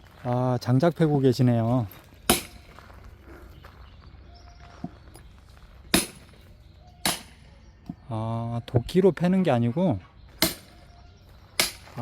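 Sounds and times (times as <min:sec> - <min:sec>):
hammer striking steel wedge: 0:02.3 - 0:02.6, 0:05.9 - 0:06.3, 0:07.0 - 0:07.4, 0:10.4 - 0:10.7, 0:11.6 - 0:11.9.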